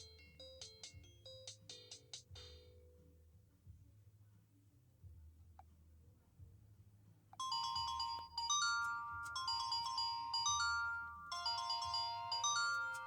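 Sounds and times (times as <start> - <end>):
polyphonic phone ringtone: 7.4 - 13.0.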